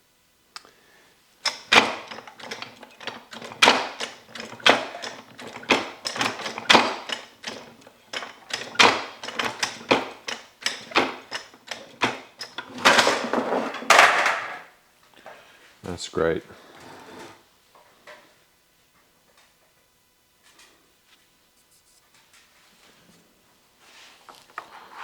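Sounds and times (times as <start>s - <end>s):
sharp mechanical clacks: 1.4s - 13.1s.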